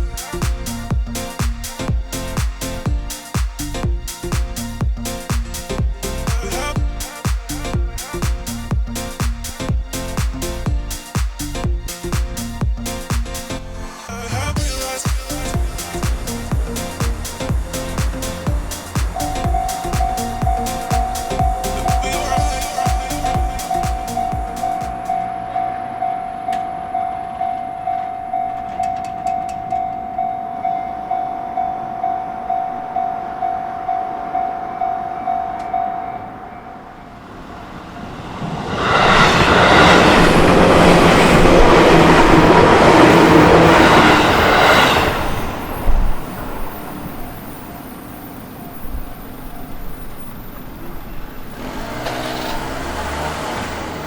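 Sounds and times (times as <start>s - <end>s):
electric train passing: 0.0s - 54.0s
level-crossing alarm bell dinging: 15.6s - 37.2s.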